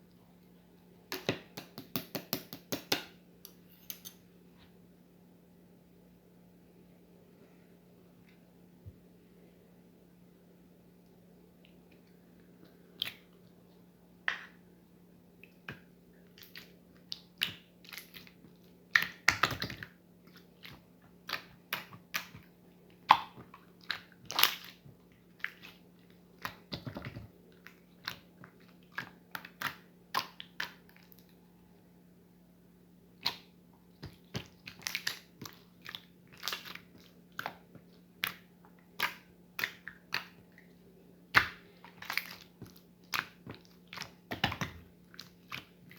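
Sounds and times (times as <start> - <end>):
faint low hum: 0.0 - 45.9.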